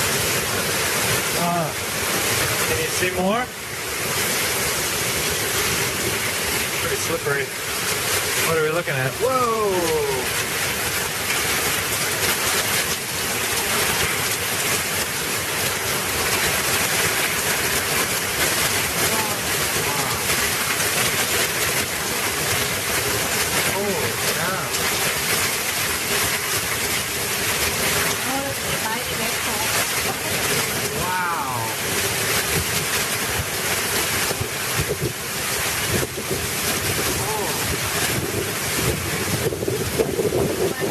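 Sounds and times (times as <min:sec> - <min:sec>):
heavy rain pouring: 0:00.0 - 0:40.9
wind buffeting microphone: 0:34.3 - 0:40.9.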